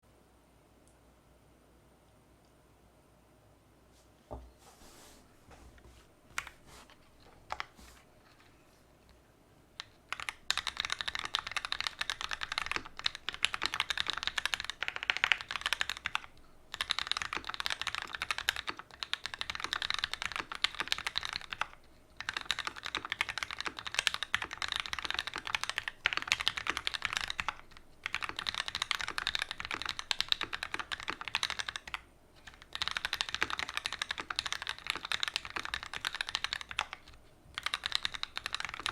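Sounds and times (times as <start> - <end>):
typing on mechanical keyboard: 9.8 - 38.9.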